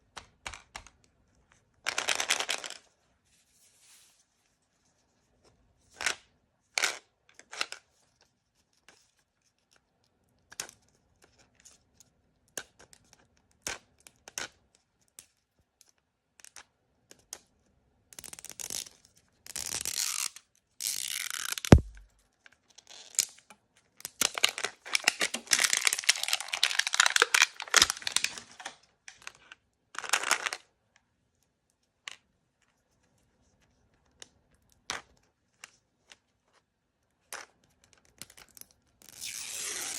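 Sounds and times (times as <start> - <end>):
plastic packaging tearing and crinkling: 21.0 - 22.0, 24.2 - 28.8, 39.1 - 39.9
sharp knock: 21.7 - 22.0.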